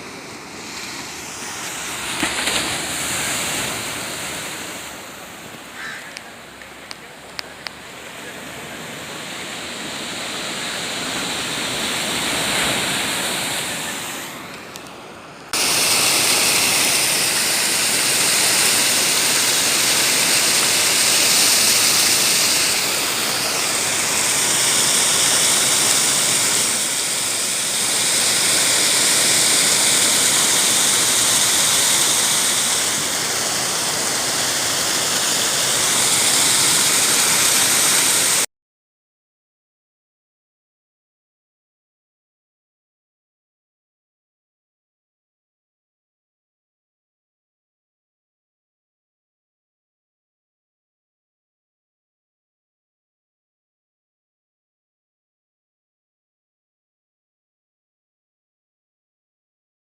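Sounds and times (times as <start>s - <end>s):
floodwater rushing: 0.0s - 38.4s.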